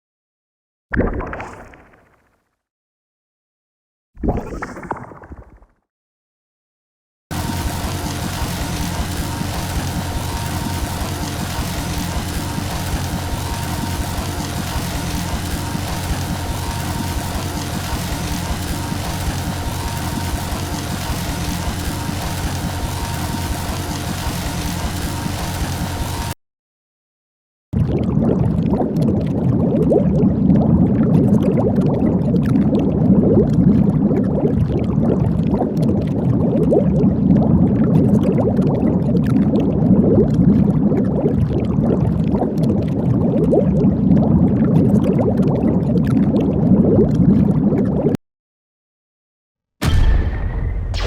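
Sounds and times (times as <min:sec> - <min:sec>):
watery bubbling pops: 0:00.9 - 0:02.4, 0:04.2 - 0:05.8, 0:27.8 - 0:48.2.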